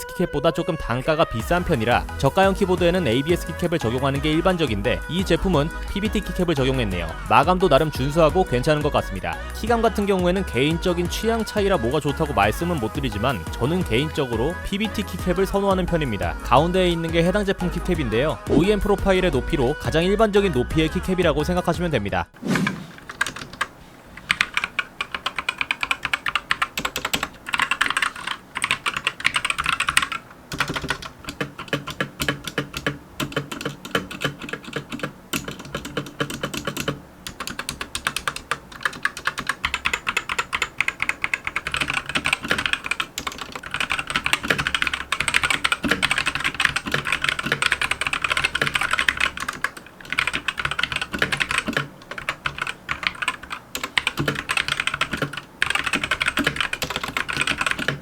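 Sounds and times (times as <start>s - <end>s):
keyboard typing: 22.5s - 58.0s.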